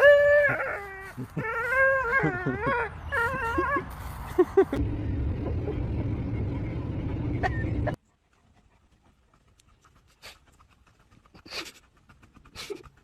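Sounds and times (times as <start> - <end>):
dog whining: 0.0 - 3.9
low steady hum: 4.7 - 8.0.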